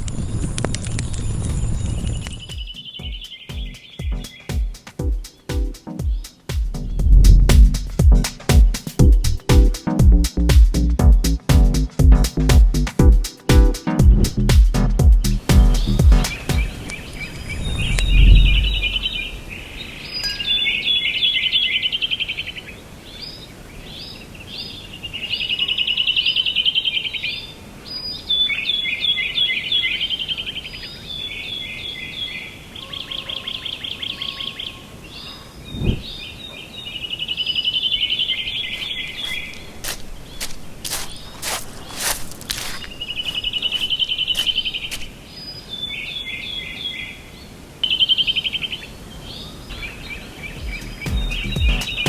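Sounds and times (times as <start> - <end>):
songbird singing trills: 2.1 - 7.5, 15.2 - 42.0, 42.7 - 52.0
low thuds: 6.1 - 16.8.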